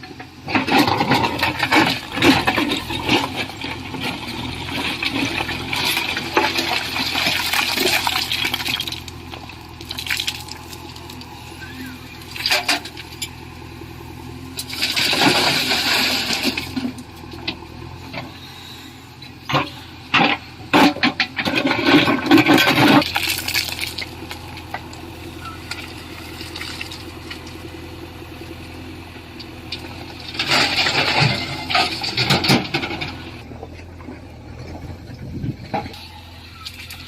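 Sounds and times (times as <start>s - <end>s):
engine running steadily: 0.0s - 37.0s.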